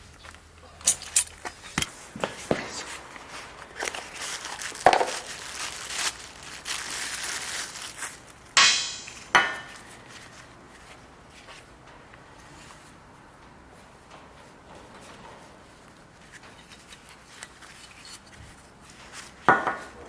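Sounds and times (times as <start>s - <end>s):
metal parts clinking and scraping: 0.8s - 1.9s
sharp metal strikes ringing: 8.6s - 10.0s.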